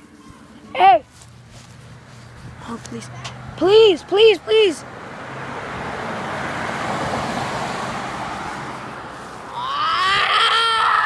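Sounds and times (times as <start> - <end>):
car passing by: 1.3 - 10.2.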